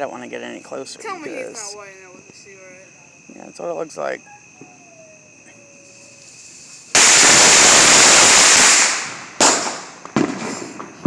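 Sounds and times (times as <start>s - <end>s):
firework hiss: 5.8s - 11.0s
firework bang: 6.9s - 11.0s.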